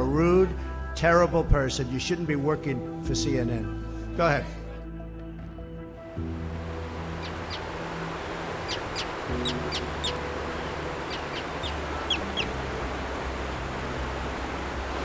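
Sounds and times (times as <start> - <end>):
waterfall rushing: 6.3 - 15.0
birds calling: 6.7 - 15.0.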